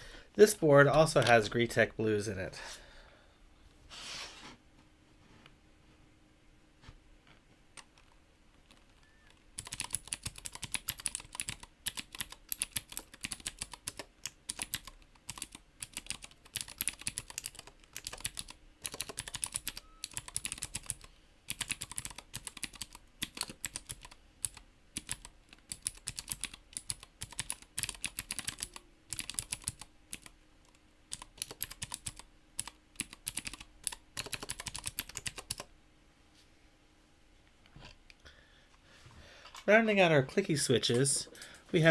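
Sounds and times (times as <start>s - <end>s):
mechanical keyboard typing: 7.8s - 30.4s, 31.1s - 35.7s.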